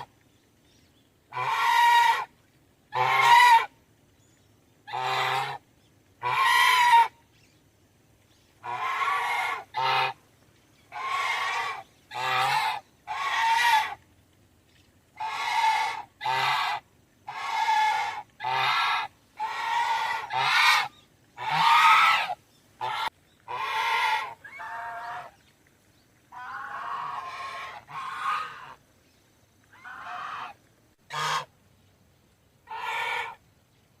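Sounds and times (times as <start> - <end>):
goose honking: 1.3 - 2.3, 2.9 - 3.7, 6.2 - 7.1, 8.6 - 10.2, 11.0 - 14.0, 15.2 - 25.3, 26.3 - 28.8, 29.7 - 31.5, 32.7 - 33.4.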